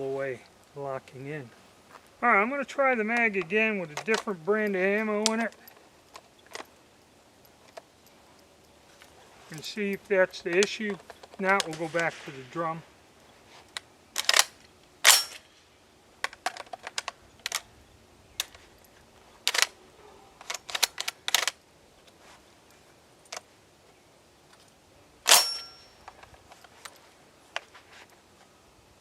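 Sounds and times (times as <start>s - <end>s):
shotgun shells clicking into magazine: 20.4s - 21.6s.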